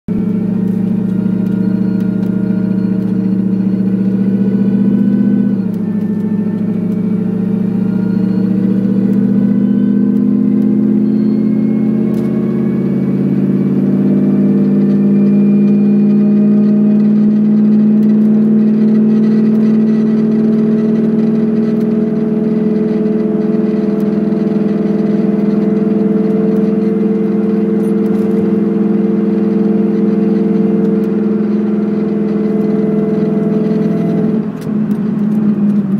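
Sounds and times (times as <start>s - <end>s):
truck engine running: 0.1s - 35.9s.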